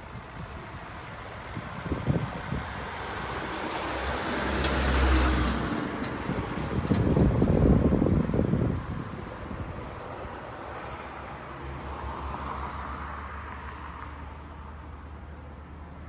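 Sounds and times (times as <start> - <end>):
truck engine rumbling: 0.0 - 9.8.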